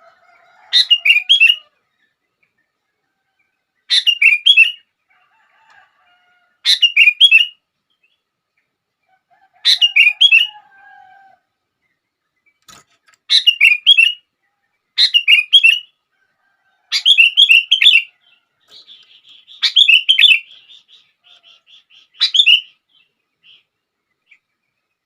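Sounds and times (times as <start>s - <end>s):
bird singing whistled notes: 3.8s - 4.9s, 6.7s - 7.6s, 13.3s - 14.3s, 15.0s - 16.0s, 17.0s - 18.1s, 18.7s - 23.7s.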